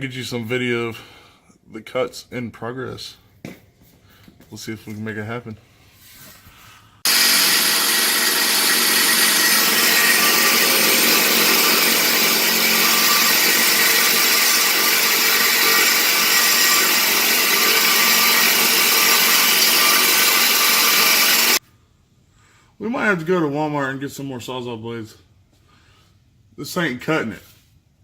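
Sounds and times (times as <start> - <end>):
reciprocating saw cutting pipe: 7.0 - 21.6.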